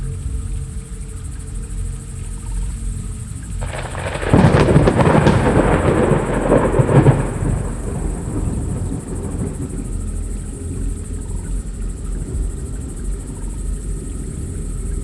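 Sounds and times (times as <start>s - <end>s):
thunderclap rumbling: 3.6s - 14.0s.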